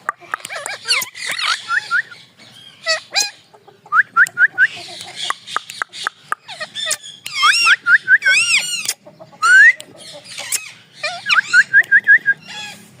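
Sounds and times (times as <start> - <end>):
parrot squawking: 0.0 - 3.5, 4.6 - 11.7, 12.3 - 12.9
parrot chirping: 0.0 - 12.8.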